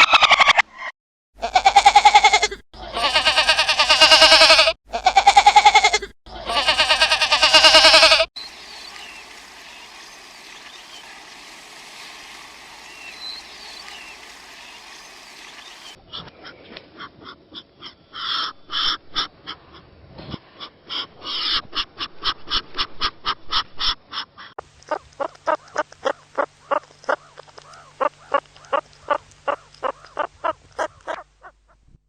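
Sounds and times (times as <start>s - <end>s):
animal rapid repeated calls: 24.9s - 31.7s.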